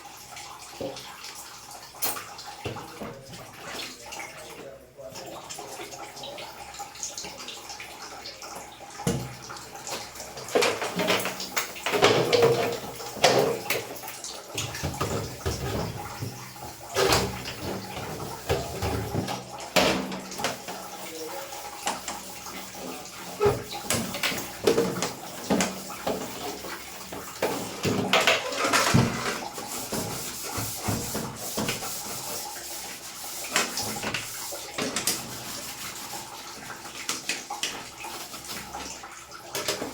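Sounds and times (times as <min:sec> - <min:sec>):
running water splashing: 0:00.0 - 0:39.9
parts knocking and clattering: 0:27.4 - 0:30.1.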